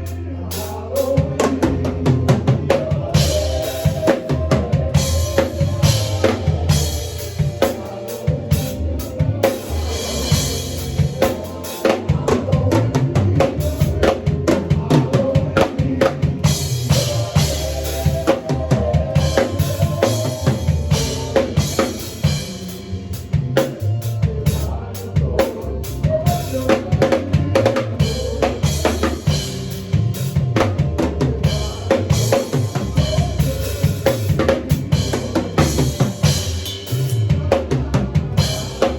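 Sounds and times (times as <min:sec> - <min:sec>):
drum kit playing: 0:00.0 - 0:38.9.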